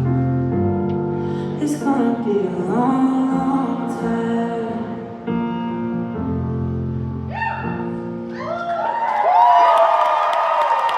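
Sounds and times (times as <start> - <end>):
person singing: 1.4 - 5.4
crowd cheering and whooping: 7.3 - 10.9.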